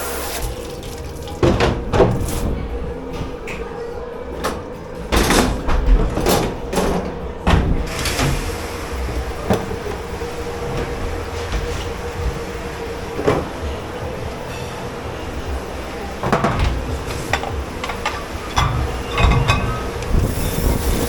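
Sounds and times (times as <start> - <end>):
dishes and metal racks clattering: 0.0 - 3.8, 4.4 - 21.0
steady machine hum: 0.0 - 21.0
heavy clunk: 16.2 - 20.4
steady hiss: 19.8 - 21.0.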